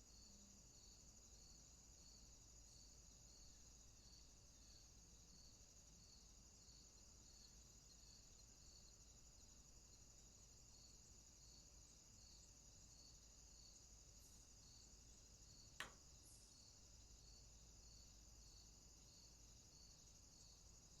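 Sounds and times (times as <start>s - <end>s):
insect chirping: 0.0s - 21.0s
sharp click: 15.8s - 16.0s.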